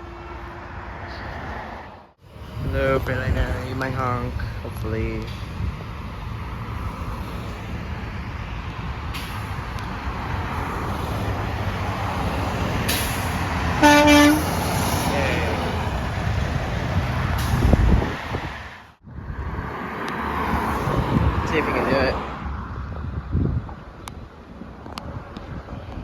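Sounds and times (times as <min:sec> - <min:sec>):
heavy vehicle rumbling past: 0:00.0 - 0:23.6
traffic noise: 0:00.0 - 0:26.0
truck horn blast: 0:13.7 - 0:14.7.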